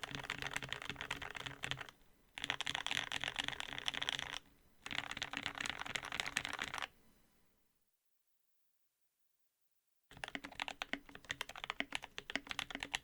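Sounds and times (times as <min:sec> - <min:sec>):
mechanical keyboard typing: 0:00.0 - 0:06.9, 0:10.1 - 0:13.0.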